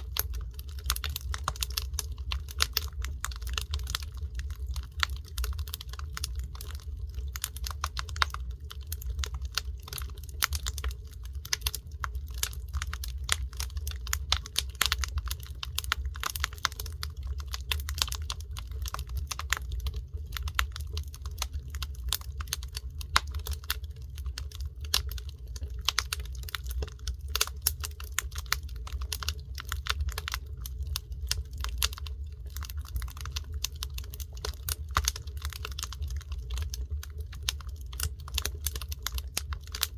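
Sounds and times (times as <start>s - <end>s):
steady low rumble: 0.0s - 39.9s
wood fire crackling: 0.0s - 39.9s.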